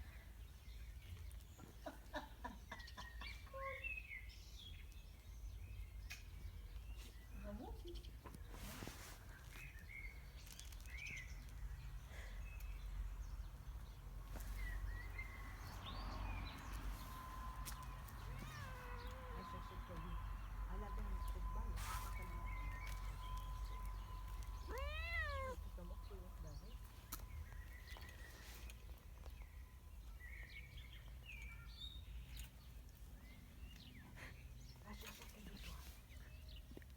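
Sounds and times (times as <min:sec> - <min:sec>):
bird chirps and calls: 0:18.2 - 0:36.7
low rumble: 0:19.1 - 0:27.9.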